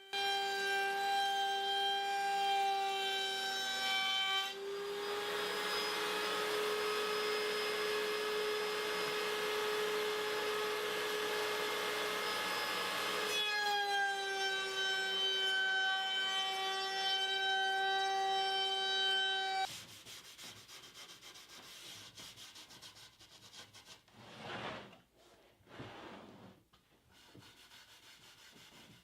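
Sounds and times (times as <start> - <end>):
power saw whine: 4.6 - 13.3.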